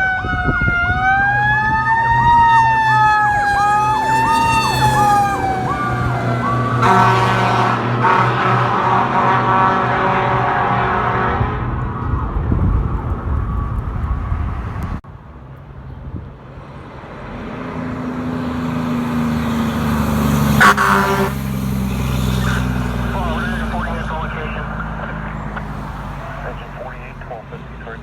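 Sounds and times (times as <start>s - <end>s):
passing vehicle rumble: 0.0s - 28.0s
engine revving: 0.8s - 11.9s, 16.6s - 28.0s
vehicle air horn blasts: 6.8s - 11.6s, 20.6s - 21.4s.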